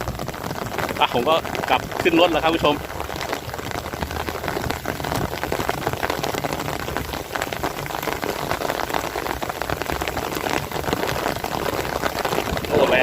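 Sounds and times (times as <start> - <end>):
heavy rain on vehicle cab: 0.0 - 13.0.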